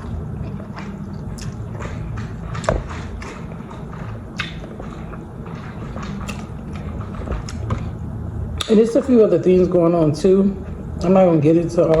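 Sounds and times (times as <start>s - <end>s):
chewing noodles mouth sounds: 0.0s - 8.0s
steady low hum: 0.0s - 12.0s.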